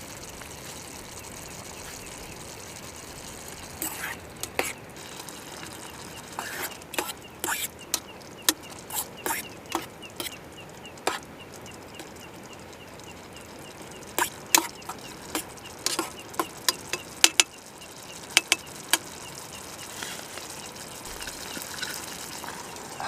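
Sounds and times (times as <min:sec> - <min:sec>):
faint steady chirping: 0:00.0 - 0:23.0
sharp clicks and knocks: 0:06.8 - 0:10.4, 0:13.7 - 0:17.6, 0:18.3 - 0:19.1.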